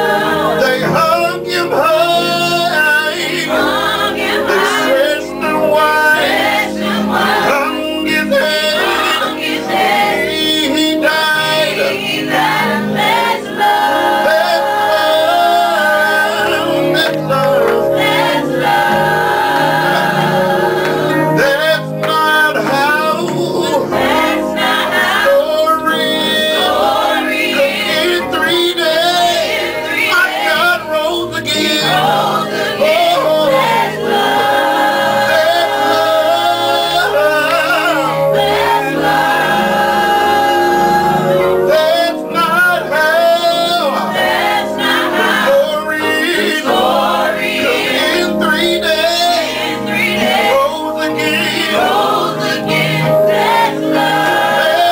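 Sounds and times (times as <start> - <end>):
choir singing gospel music: 0.0 - 54.9.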